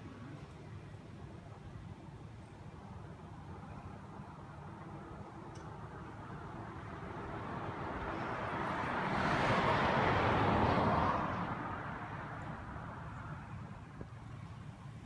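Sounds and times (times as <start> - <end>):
vehicle passing: 6.8 - 13.5.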